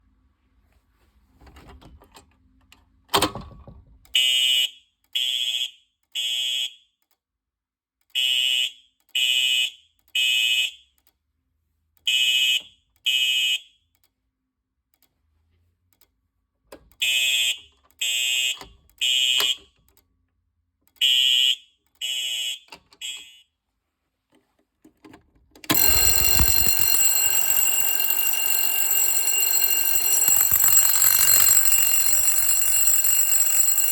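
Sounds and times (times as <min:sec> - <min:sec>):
click: 0:07.0 - 0:07.2, 0:11.0 - 0:11.2, 0:13.9 - 0:14.2, 0:14.9 - 0:15.2, 0:15.9 - 0:17.0, 0:18.6 - 0:20.1, 0:20.8 - 0:21.0
continuous ringing alarm: 0:25.7 - 0:33.9
fire alarm high beeps: 0:25.7 - 0:33.9.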